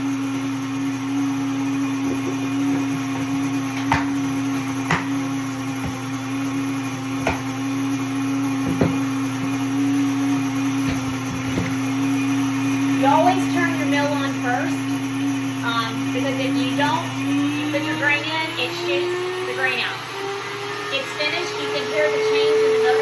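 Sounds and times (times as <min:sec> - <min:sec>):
electric grain mill running: 0:00.0 - 0:23.0.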